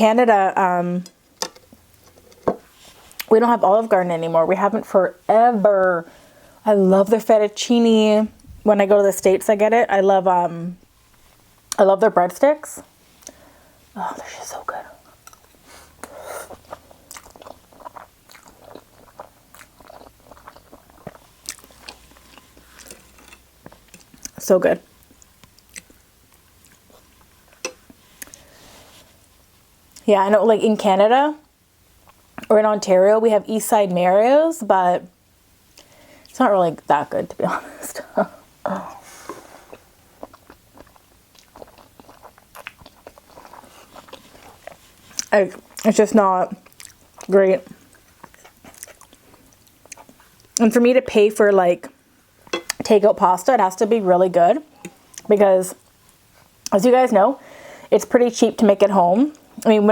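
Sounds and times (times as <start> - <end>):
person chewing food: 15.1 - 24.4, 25.0 - 28.6, 39.3 - 45.9, 46.6 - 50.6.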